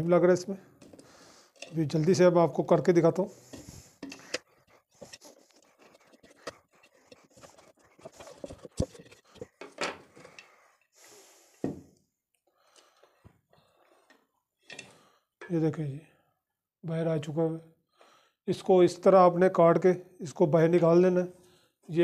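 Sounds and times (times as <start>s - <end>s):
knife scraping and tapping rubber: 3.5s - 10.5s.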